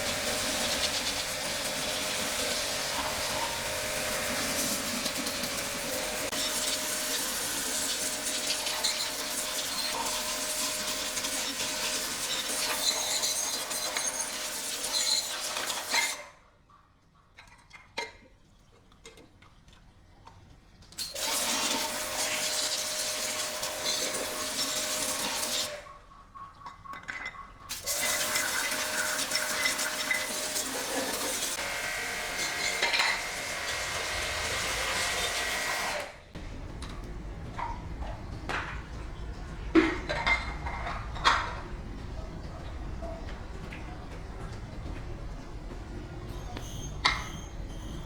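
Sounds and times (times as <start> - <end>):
power tool hissing and scraping: 0.0 - 16.0, 27.8 - 36.2.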